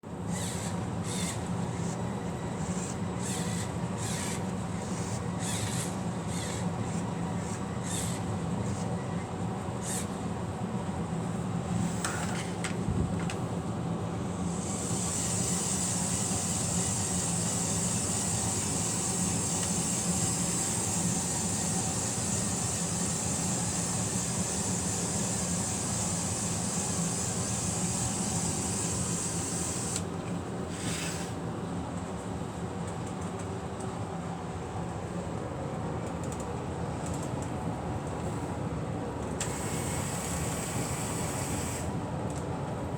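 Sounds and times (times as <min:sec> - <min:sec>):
toy electric motors whirring: 0:00.3 - 0:02.0, 0:02.6 - 0:09.0, 0:09.8 - 0:10.1, 0:14.5 - 0:30.1, 0:30.7 - 0:31.4, 0:39.4 - 0:41.9
higher motor whir: 0:14.4 - 0:31.4.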